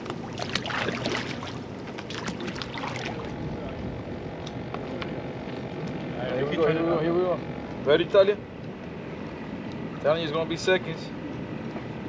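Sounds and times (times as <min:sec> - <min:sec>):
small splashes: 0:00.0 - 0:03.3
water lapping and sloshing: 0:00.0 - 0:03.6
faint steady hum: 0:00.0 - 0:12.0.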